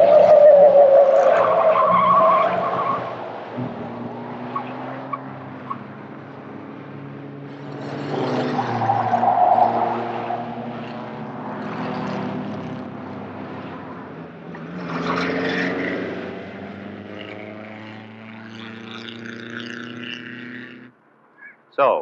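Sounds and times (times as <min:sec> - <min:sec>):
car passing: 0:00.0 - 0:21.7
vintage car engines running: 0:09.9 - 0:20.9.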